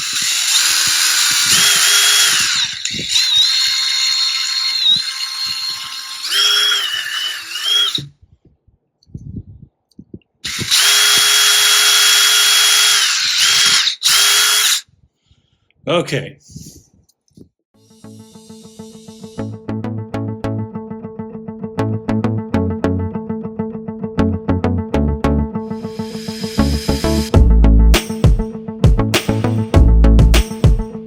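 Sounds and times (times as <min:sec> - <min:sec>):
electric drill whining: 0:00.0 - 0:08.1, 0:10.4 - 0:14.8, 0:25.8 - 0:27.3.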